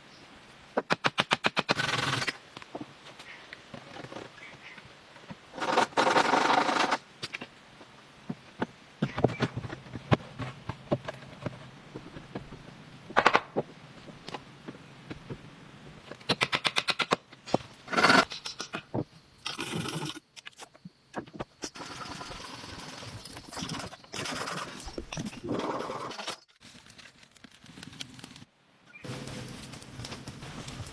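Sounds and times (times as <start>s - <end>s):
wood scraping and cutting: 5.6s - 7.0s, 17.9s - 18.4s.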